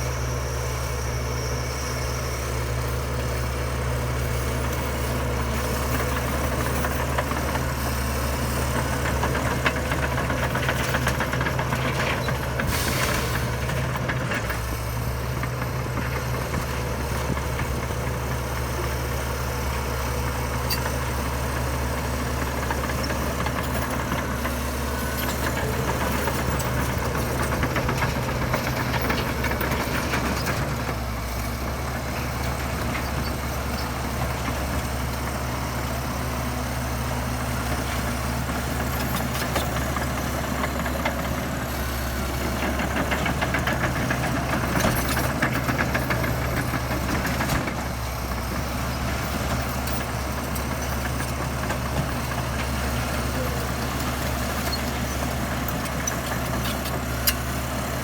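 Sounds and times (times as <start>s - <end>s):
diesel machinery engine drone: 0.0s - 58.0s.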